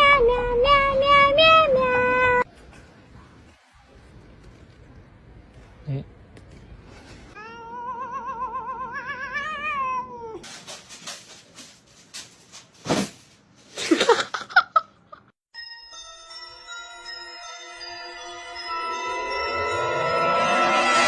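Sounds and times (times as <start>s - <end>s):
cat yowling: 7.4s - 10.5s
music: 15.6s - 21.0s.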